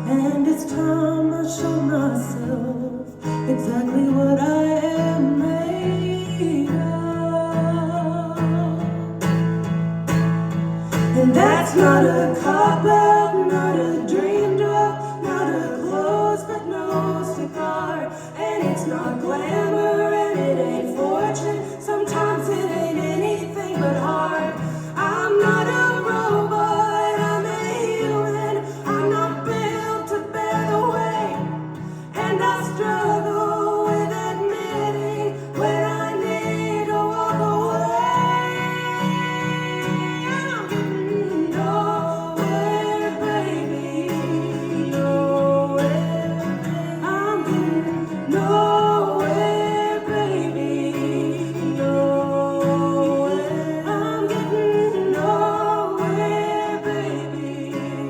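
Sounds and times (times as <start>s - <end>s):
person singing: 0.0s - 9.3s, 10.8s - 58.0s
acoustic guitar playing: 0.0s - 58.0s.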